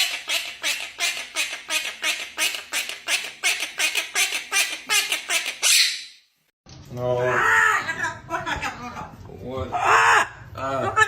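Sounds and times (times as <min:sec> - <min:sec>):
parrot squawking: 0:00.0 - 0:06.2.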